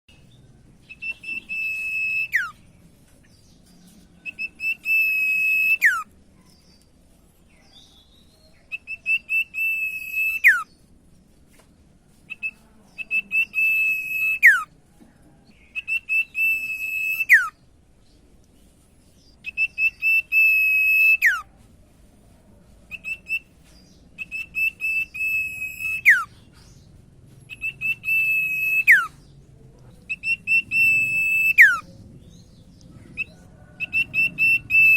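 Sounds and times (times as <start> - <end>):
bird whistled song: 0.1 - 6.8, 7.6 - 10.9, 12.3 - 14.7, 15.6 - 17.6, 19.2 - 21.5, 22.9 - 26.9, 27.5 - 29.3, 30.0 - 34.9.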